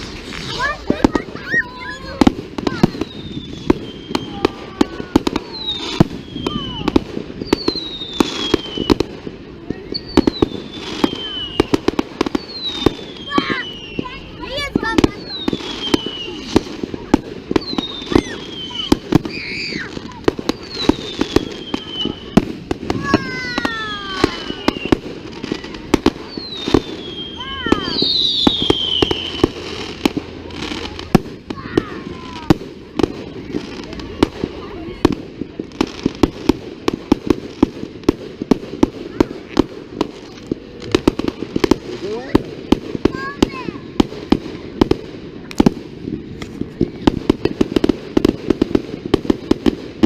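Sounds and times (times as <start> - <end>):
firework bangs: 0.0 - 50.0
whistling fireworks: 0.0 - 50.0.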